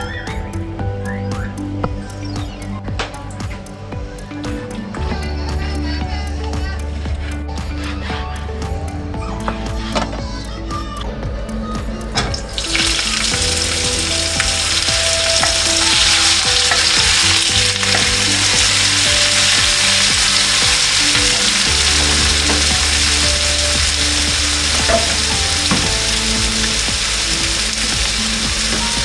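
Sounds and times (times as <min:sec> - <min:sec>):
background music: 0:00.0 - 0:29.0
food sizzling as it fries: 0:12.6 - 0:29.0.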